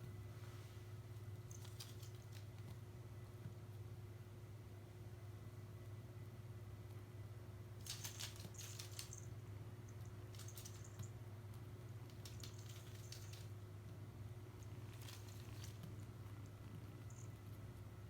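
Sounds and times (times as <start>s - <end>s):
steady low hum: 0.0s - 18.0s
kitten scratching and clicking: 1.5s - 2.8s, 7.8s - 9.3s, 9.9s - 13.6s, 14.6s - 17.4s.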